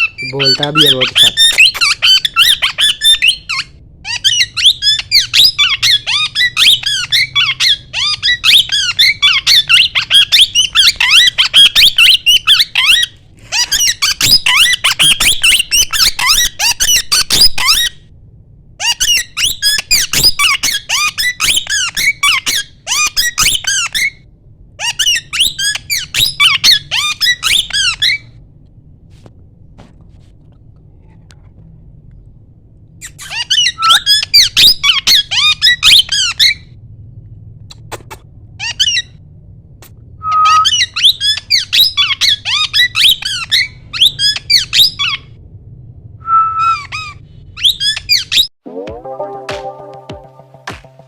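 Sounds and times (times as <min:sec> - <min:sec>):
parakeet squeaky chirps: 0:00.0 - 0:18.0, 0:18.8 - 0:28.3, 0:33.0 - 0:36.7, 0:37.7 - 0:39.2, 0:40.2 - 0:45.3, 0:46.5 - 0:48.5.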